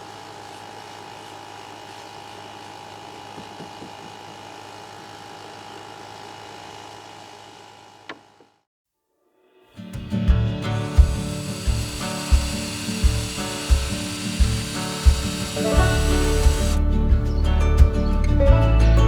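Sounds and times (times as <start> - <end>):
high even whine: 10.7 - 16.9
small electric motor humming: 10.8 - 16.8.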